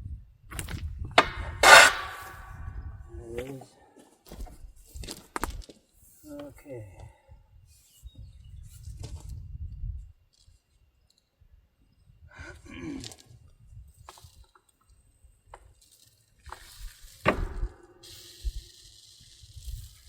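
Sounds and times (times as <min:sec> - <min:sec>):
hissing rustle of grain: 0:15.8 - 0:20.0.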